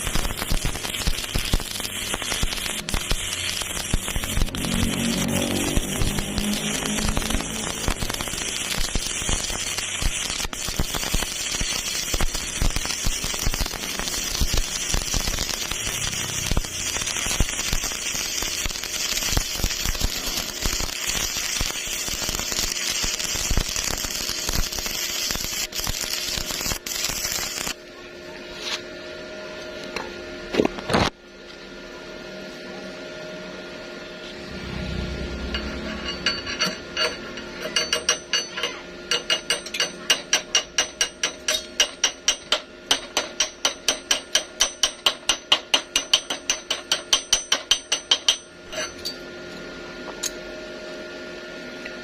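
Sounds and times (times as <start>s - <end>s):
welding arc crackling: 0.0s - 27.8s, 34.4s - 48.9s
brief loud sound: 34.4s - 36.1s.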